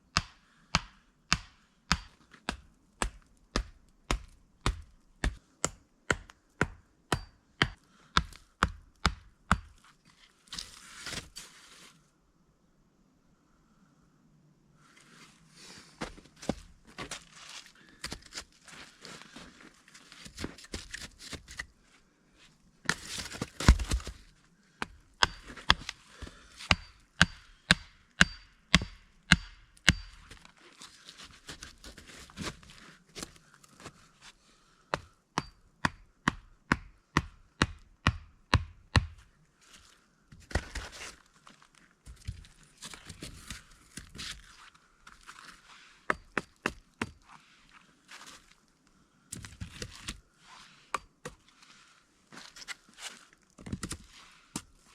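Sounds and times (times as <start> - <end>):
wood being chopped: 0.1 - 9.8.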